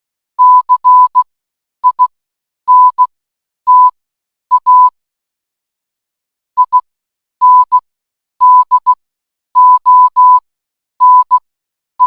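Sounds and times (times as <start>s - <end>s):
morse code beeps: 0.4s - 1.2s, 1.8s - 2.1s, 2.7s - 3.1s, 3.7s - 5.0s, 6.6s - 6.8s, 7.4s - 7.8s, 8.4s - 9.0s, 9.6s - 10.4s, 11.0s - 11.4s.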